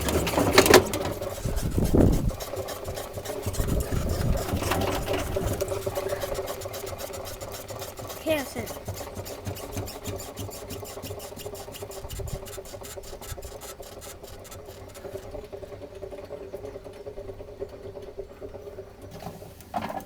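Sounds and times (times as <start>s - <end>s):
rapid even ticking of drum: 0.0s - 15.4s.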